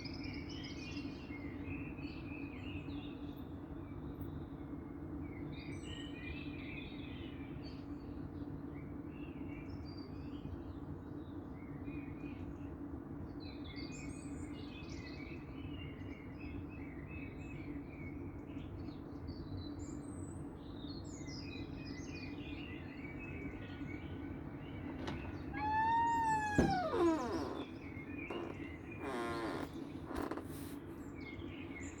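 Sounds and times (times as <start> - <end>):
small birds chirping: 20.8 - 32.0
bird call falling in pitch: 25.5 - 27.6.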